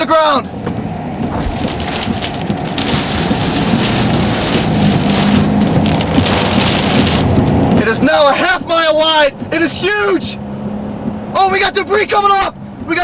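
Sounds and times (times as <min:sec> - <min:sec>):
gusting wind: 0:00.4 - 0:11.6
heavy rain: 0:01.2 - 0:07.9.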